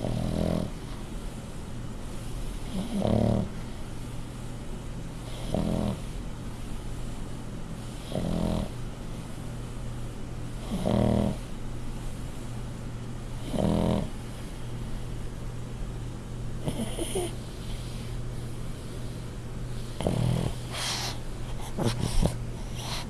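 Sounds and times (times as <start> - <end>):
dog snoring: 0.0 - 0.9, 2.7 - 3.6, 5.2 - 6.1, 8.0 - 8.8, 10.6 - 11.5, 13.4 - 14.2, 16.6 - 17.9, 19.9 - 23.0
dog snuffling breath: 16.6 - 23.0.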